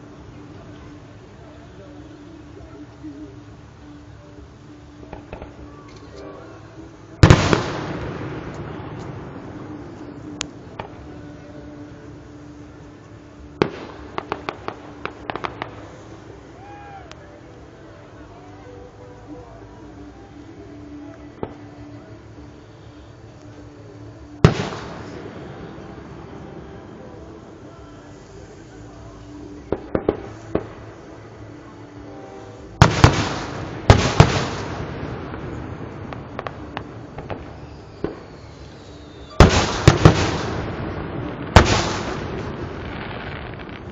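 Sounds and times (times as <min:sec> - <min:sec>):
fireworks crackling: 0:00.0 - 0:43.9
steady low hum: 0:00.0 - 0:43.9
fireworks pops and bangs: 0:05.0 - 0:06.4, 0:07.2 - 0:12.1, 0:13.5 - 0:16.1, 0:24.4 - 0:26.4, 0:29.4 - 0:30.9, 0:32.8 - 0:43.9.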